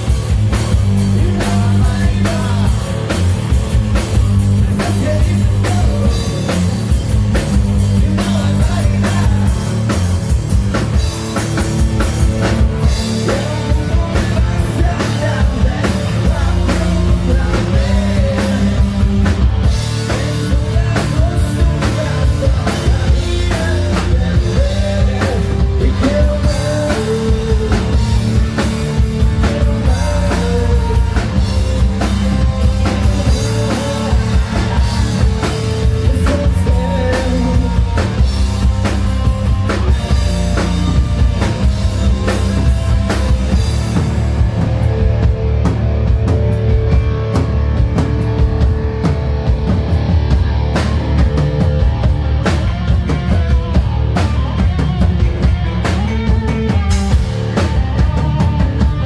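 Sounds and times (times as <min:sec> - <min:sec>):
drum kit: 0:00.0 - 0:59.0
electric guitars: 0:00.0 - 0:59.0
lead vocal singing: 0:01.0 - 0:03.3, 0:04.6 - 0:06.8, 0:07.6 - 0:10.0, 0:12.8 - 0:39.2.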